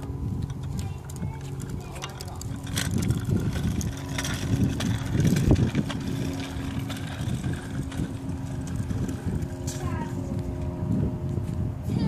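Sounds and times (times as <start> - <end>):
wind rumble on microphone: 0.0 - 12.0
small clicks and rattles: 0.4 - 9.9.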